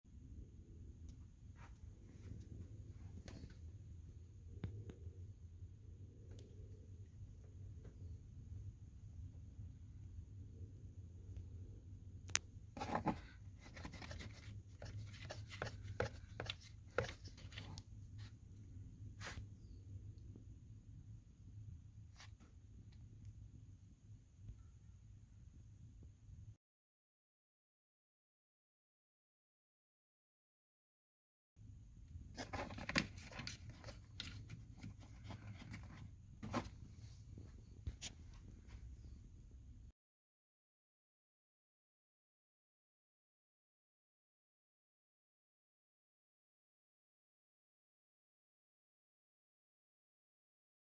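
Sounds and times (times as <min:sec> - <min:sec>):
low steady hum: 0:00.1 - 0:26.6.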